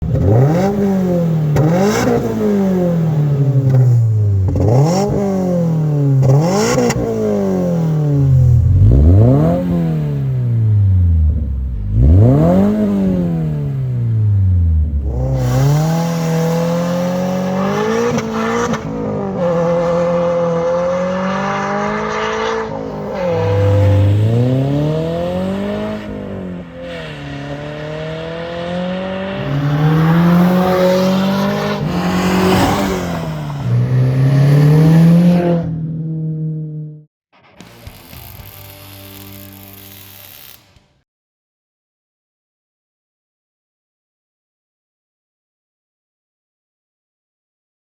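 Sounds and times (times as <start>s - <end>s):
car engine revving: 0.0s - 37.0s.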